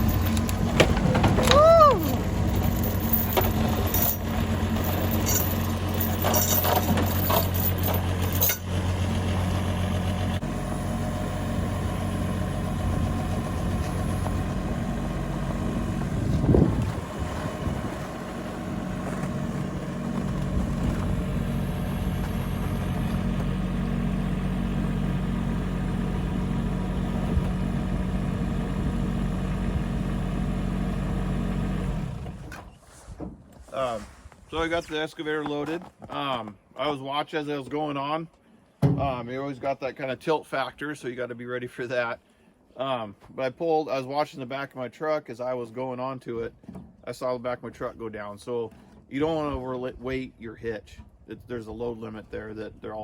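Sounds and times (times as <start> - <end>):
metal clanking: 0.0 - 8.7
excavator engine running: 0.0 - 32.6.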